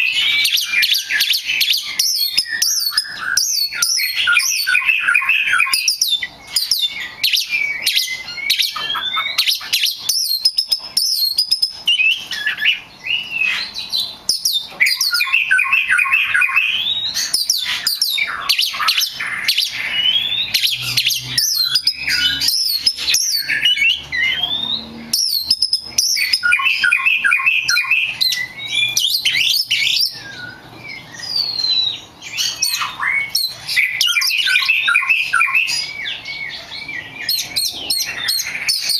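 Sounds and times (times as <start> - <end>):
small birds chirping: 0.0 - 38.9.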